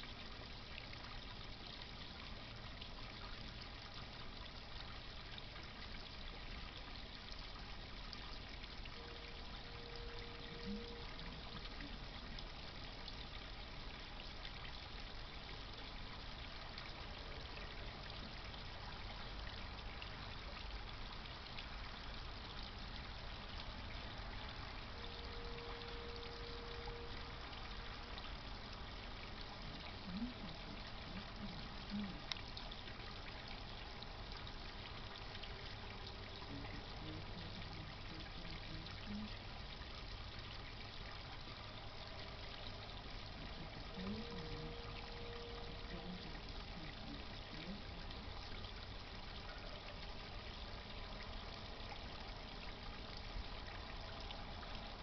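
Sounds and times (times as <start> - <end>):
faint steady tone: 0.0 - 55.0
pond pump water trickling: 0.0 - 55.0
faint low blips: 8.9 - 12.5, 24.8 - 28.8.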